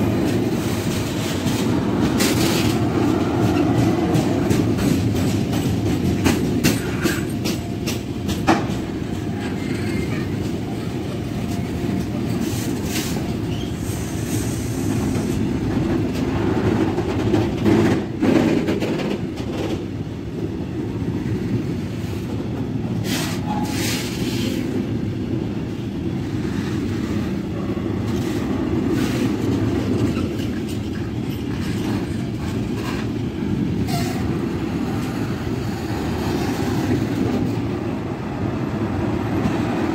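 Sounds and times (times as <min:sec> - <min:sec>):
train wheels rumbling on track: 0:00.0 - 0:39.9
wheels clacking over rail joints: 0:00.2 - 0:10.7.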